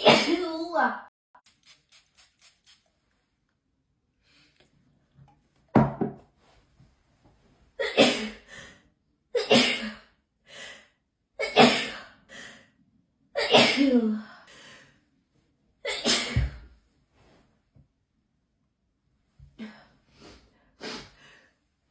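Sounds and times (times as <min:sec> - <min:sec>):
person sneezing: 0:15.9 - 0:16.6.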